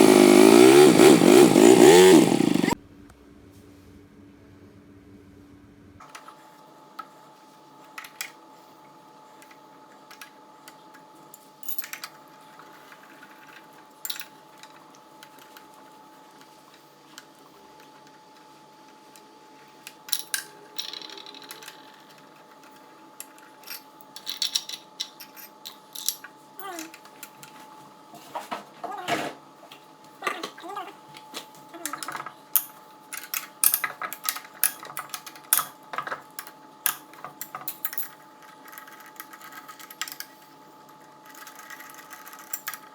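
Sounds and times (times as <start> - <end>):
motorcycle engine running: 0.0 - 2.8.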